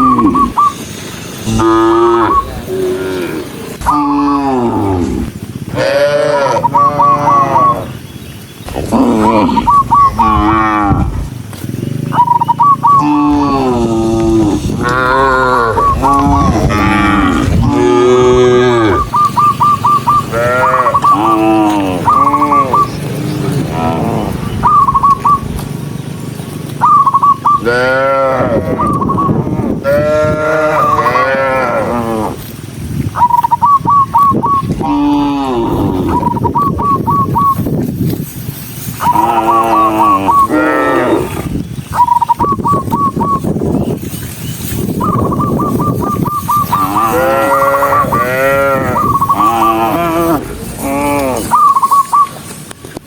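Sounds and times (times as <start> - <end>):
cattle mooing: 0.0 - 0.6, 1.4 - 8.0, 8.7 - 12.3, 12.9 - 25.6, 27.6 - 32.6, 34.6 - 36.6, 39.0 - 41.6, 46.4 - 51.8
steady low rumble: 0.0 - 39.1, 44.7 - 53.0.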